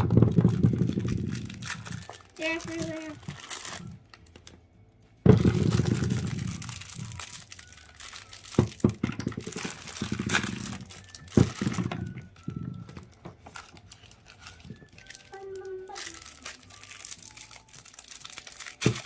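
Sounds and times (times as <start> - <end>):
plastic packaging crinkling: 0.0 - 19.0.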